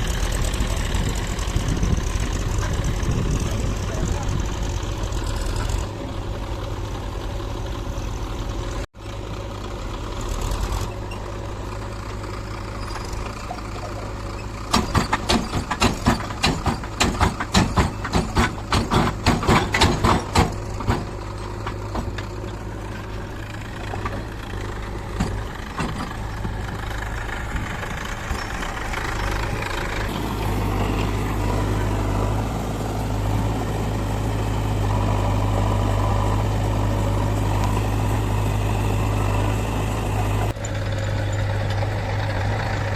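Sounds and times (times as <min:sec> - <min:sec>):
diesel engine running: 0:00.0 - 0:42.9
rapid loud clattering knocks: 0:14.7 - 0:22.4.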